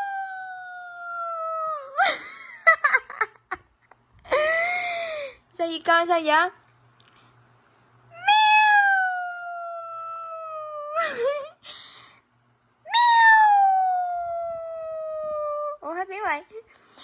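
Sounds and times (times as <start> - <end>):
person imitating cat meows: 0.0 - 2.0, 8.2 - 11.0, 12.9 - 15.8.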